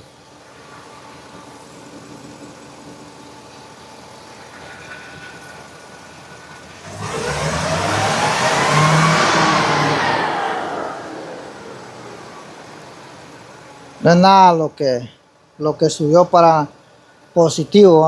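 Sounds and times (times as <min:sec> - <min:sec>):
engine idling and revving: 0:06.5 - 0:14.0.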